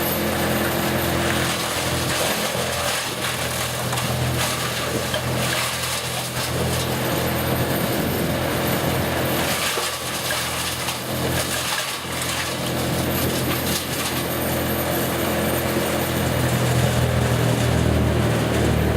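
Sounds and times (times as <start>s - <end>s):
brush going through chipper: 0.0s - 18.9s
chipper engine drone: 0.0s - 18.9s.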